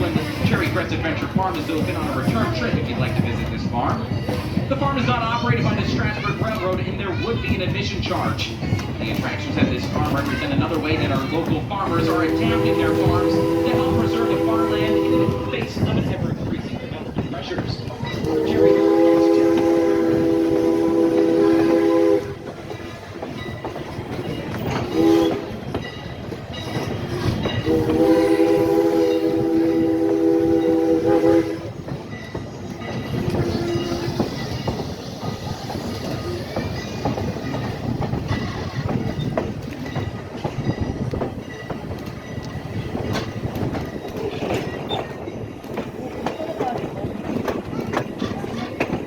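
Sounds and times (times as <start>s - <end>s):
train wheels clickety-clack: 0.0s - 49.0s
steam locomotive whistle: 11.9s - 15.6s, 18.1s - 22.5s, 24.8s - 25.6s, 26.7s - 31.9s, 33.2s - 34.6s.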